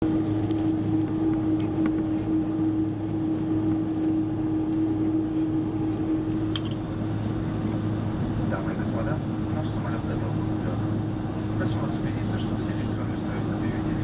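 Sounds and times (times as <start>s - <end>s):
airplane cabin drone: 0.0s - 14.0s.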